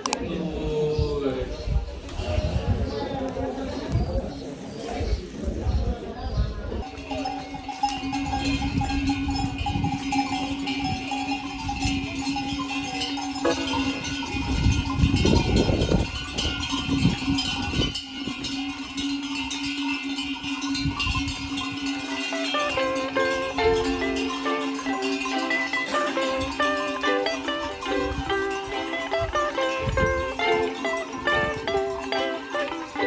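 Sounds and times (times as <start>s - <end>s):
clanking animal bells: 6.8s - 33.0s.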